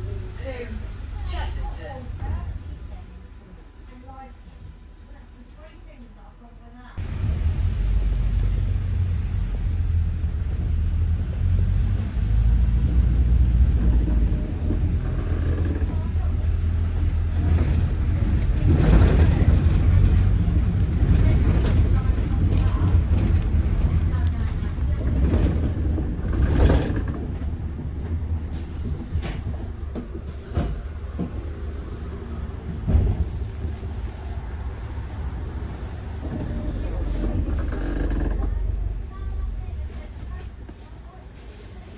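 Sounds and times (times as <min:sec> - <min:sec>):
bus engine and road rumble: 0:00.0 - 0:41.9
bus body knocks and rattles: 0:13.6 - 0:31.6, 0:32.6 - 0:34.5.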